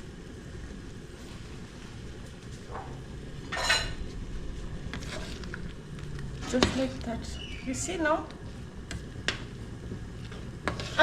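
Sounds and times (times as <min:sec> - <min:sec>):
low steady background noise: 0:00.0 - 0:11.0
pot and utensils clattering: 0:03.5 - 0:04.0.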